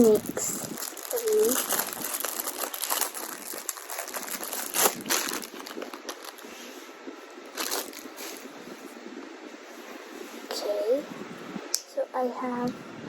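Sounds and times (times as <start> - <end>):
packaging crinkling: 0.0 - 6.5, 7.5 - 8.4.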